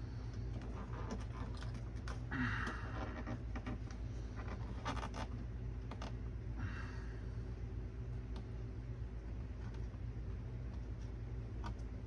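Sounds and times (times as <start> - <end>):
steady low hum: 0.0 - 12.0
scratchy rustles of handling: 0.4 - 6.2.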